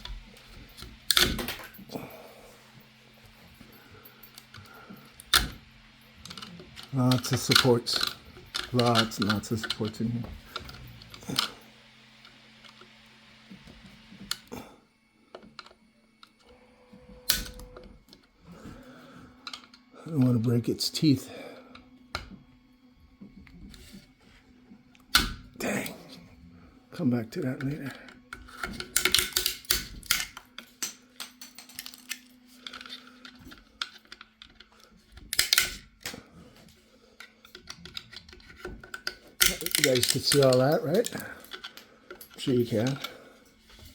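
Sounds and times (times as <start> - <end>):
plastic snapping and crackling: 0.8 - 1.8, 28.2 - 36.3, 37.2 - 43.1.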